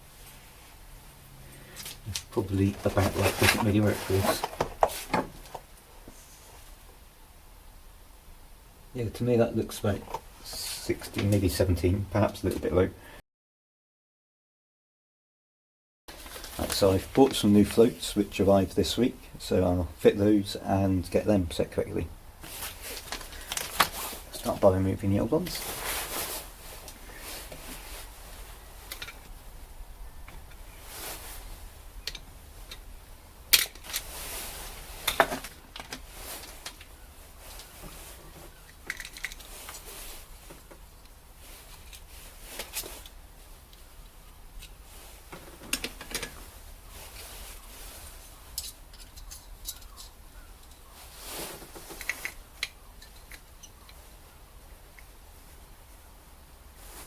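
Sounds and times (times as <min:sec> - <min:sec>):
metal parts clicking and scraping: 0:33.5 - 0:34.2, 0:38.6 - 0:39.8, 0:48.5 - 0:50.8, 0:51.9 - 0:54.0.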